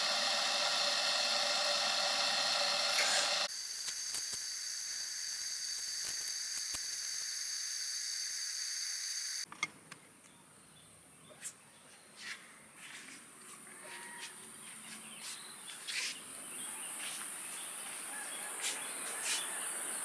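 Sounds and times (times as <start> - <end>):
insects shrill chorus: 3.0 - 9.5.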